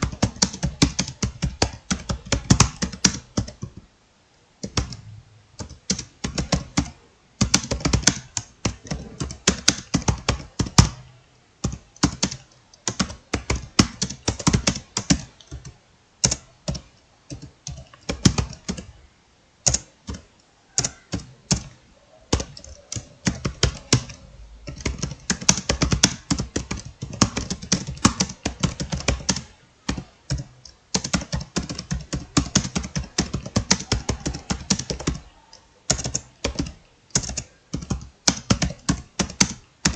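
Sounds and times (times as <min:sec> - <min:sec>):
fast typing on keyboard: 0:00.0 - 0:03.8, 0:04.6 - 0:05.0, 0:05.6 - 0:19.0, 0:19.6 - 0:39.9.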